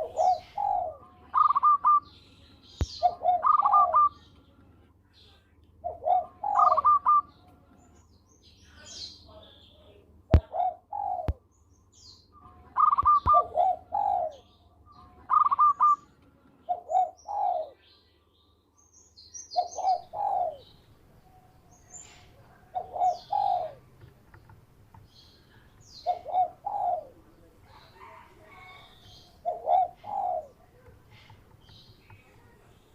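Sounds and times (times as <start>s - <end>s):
dove cooing: 0.0s - 2.1s, 2.8s - 4.2s, 5.8s - 7.5s, 10.3s - 11.4s, 12.7s - 17.8s, 19.5s - 24.1s, 25.8s - 31.4s
small birds chirping: 0.0s - 32.9s.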